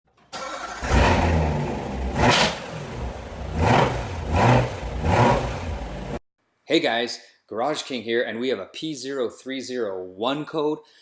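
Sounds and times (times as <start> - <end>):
car engine revving: 0.4 - 6.2.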